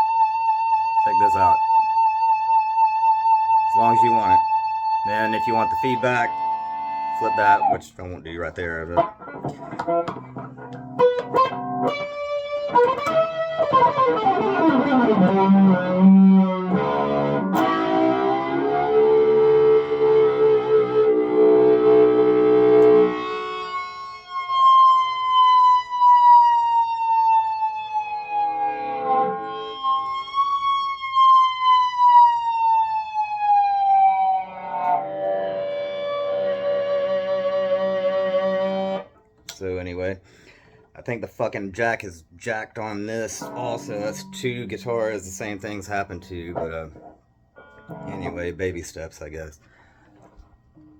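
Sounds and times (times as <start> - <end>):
fretless electric guitar notes: 0.0 - 39.2, 42.8 - 48.9
sustained electric guitar note: 43.1 - 47.0, 47.6 - 48.6.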